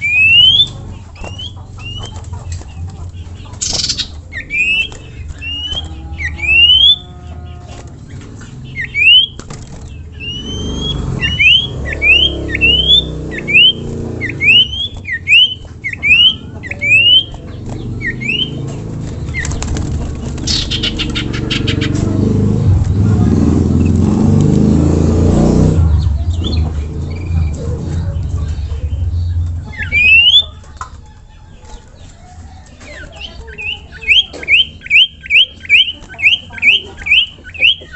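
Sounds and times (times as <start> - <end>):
low rumble: 17.3 - 31.6.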